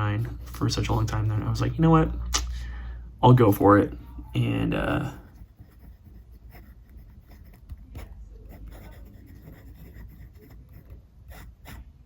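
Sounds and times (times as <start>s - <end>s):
pen nib scratching paper: 5.0s - 12.0s.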